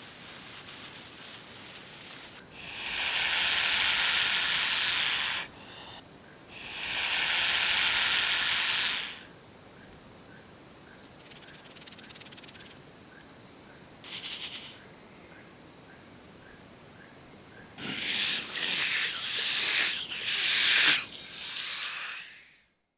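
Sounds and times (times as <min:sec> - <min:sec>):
insects chirring: 0:00.0 - 0:22.7
snake hissing: 0:02.3 - 0:09.3, 0:14.1 - 0:14.8, 0:17.8 - 0:22.7.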